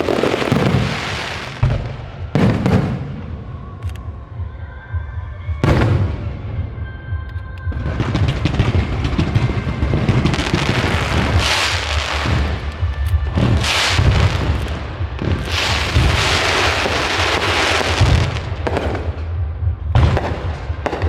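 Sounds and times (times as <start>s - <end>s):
crackling firework bursts: 0.0s - 3.7s, 7.8s - 19.2s
music with low bass: 0.1s - 21.0s.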